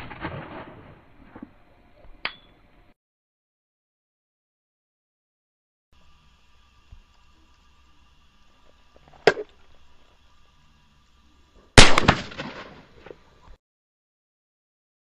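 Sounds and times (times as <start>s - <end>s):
sharp crack: 0.0s - 1.0s, 11.8s - 13.2s
handgun shot ringing: 11.8s - 12.6s.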